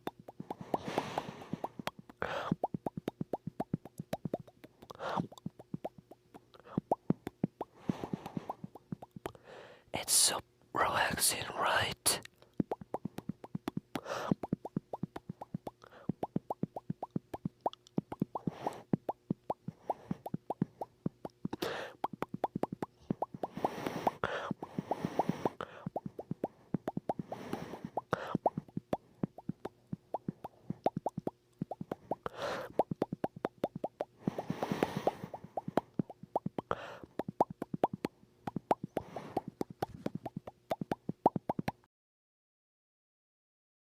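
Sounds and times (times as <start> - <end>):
person making mouth pops: 0.0 - 9.4, 10.0 - 10.4, 11.0 - 41.9
short breathy noises: 0.5 - 2.6, 9.4 - 12.2, 23.4 - 26.0, 34.2 - 35.9.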